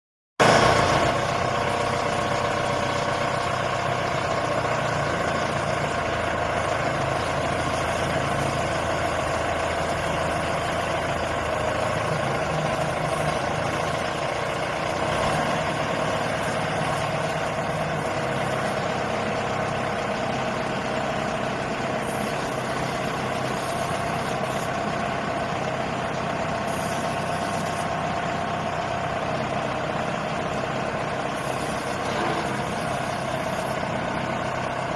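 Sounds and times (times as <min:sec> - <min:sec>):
drilling rig engine running: 0:00.4 - 0:34.9.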